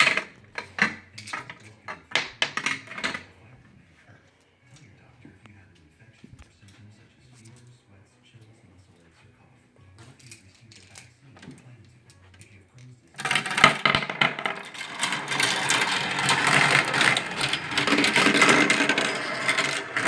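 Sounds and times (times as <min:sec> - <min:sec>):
marbles rattling through marble run: 0:00.0 - 0:00.9, 0:13.2 - 0:20.0.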